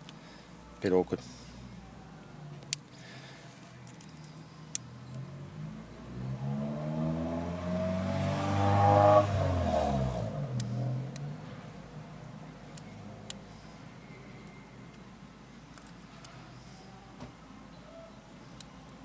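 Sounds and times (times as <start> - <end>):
car driving past: 5.0 - 11.7.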